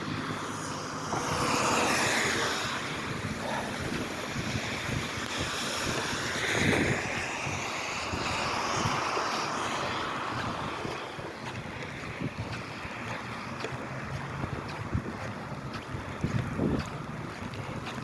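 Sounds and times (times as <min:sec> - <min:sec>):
rain on microphone: 0:00.3 - 0:18.0
wind rushing: 0:00.6 - 0:12.8.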